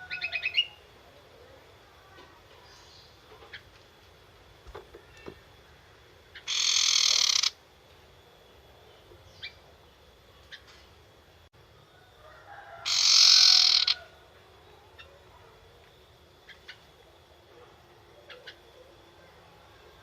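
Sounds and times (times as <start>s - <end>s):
bird hissing screeches: 6.5s - 7.5s, 12.8s - 14.0s.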